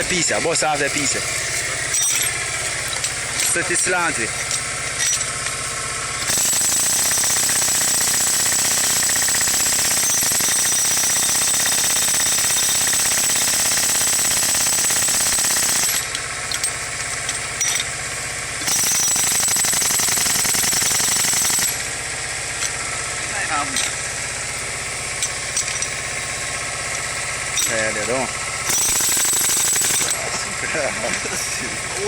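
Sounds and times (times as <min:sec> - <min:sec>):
jackhammer hammering: 0:00.0 - 0:32.0.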